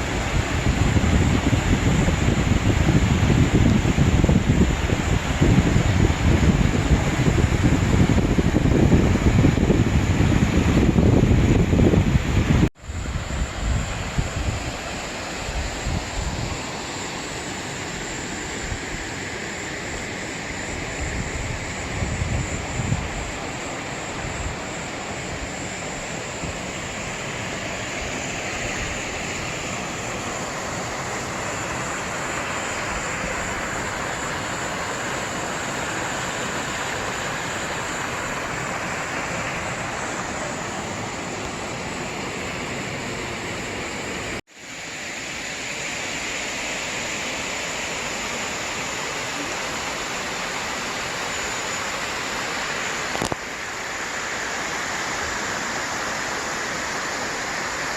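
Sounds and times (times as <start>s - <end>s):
stream water rushing: 0.0s - 57.9s.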